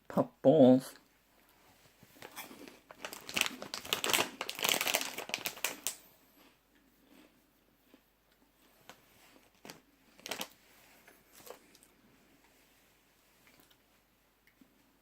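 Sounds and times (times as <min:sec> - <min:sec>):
plastic snack bag crinkling: 0:02.1 - 0:06.1, 0:08.8 - 0:10.6, 0:11.3 - 0:11.9.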